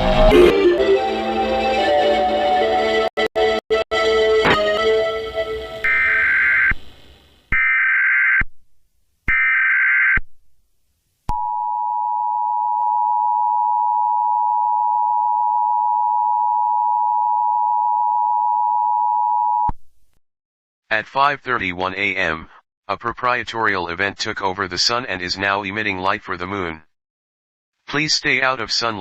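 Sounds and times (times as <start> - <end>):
two-tone attention signal: 0.3 - 0.9
data tone bursts: 5.8 - 6.8.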